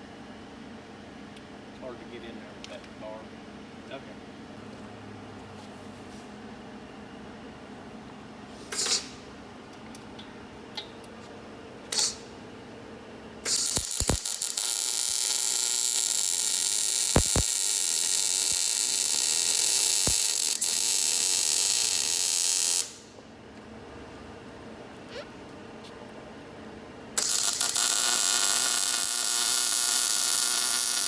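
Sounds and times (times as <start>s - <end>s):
welding arc crackling: 11.9s - 12.3s, 13.5s - 23.0s, 27.2s - 31.0s.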